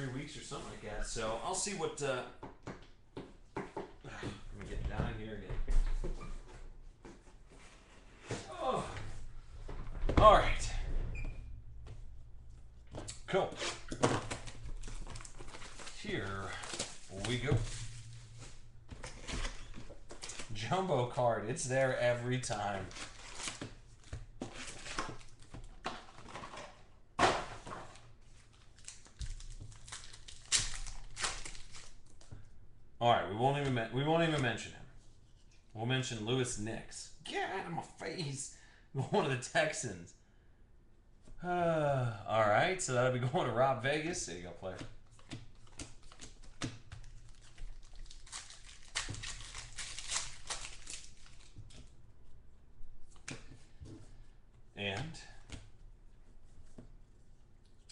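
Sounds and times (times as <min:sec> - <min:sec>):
rustling and crinkling: 0:11.9 - 0:20.7, 0:22.1 - 0:32.5, 0:44.7 - 0:52.4.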